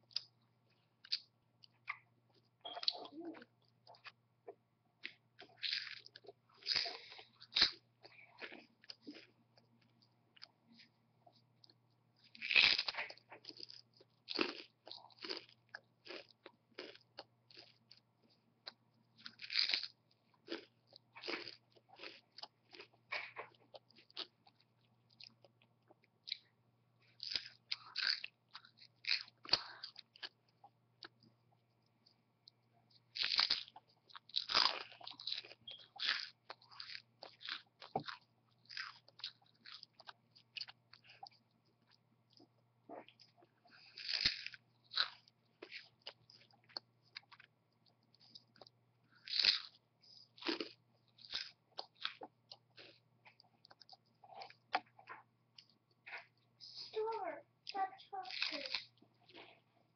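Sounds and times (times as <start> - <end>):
chewing crunches: 0.0 - 56.5, 57.6 - 59.9
apple crunching bites: 5.0 - 9.3, 12.4 - 17.8, 19.2 - 24.3, 27.2 - 31.2, 32.9 - 41.0, 43.1 - 56.4, 58.2 - 59.5.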